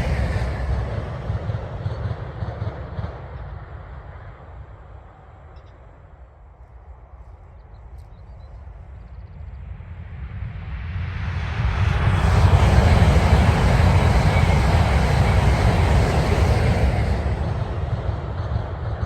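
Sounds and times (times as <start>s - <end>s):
low rumble: 0.0s - 5.1s, 10.4s - 19.0s
passing train: 0.0s - 19.0s.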